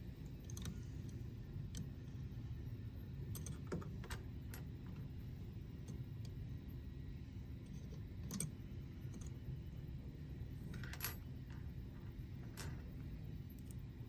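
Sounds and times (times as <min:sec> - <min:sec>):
steady low hum: 0:00.0 - 0:14.0
allen key clicking on metal: 0:03.3 - 0:04.7, 0:07.7 - 0:09.4.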